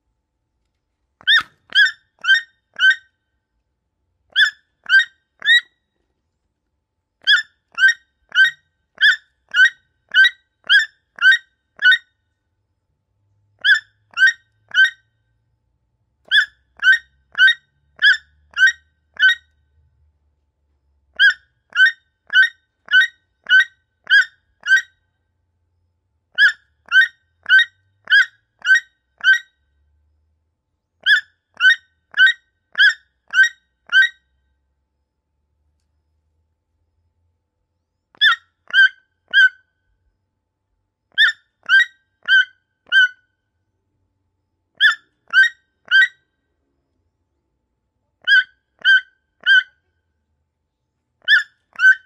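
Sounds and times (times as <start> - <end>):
toucan croaking calls: 1.2 - 3.1, 4.3 - 5.7, 7.2 - 12.1, 13.6 - 15.0, 16.3 - 19.5, 21.2 - 25.0, 26.4 - 29.5, 31.0 - 34.2, 38.2 - 39.7, 41.2 - 43.2, 44.8 - 46.2, 48.2 - 49.8, 51.2 - 52.0.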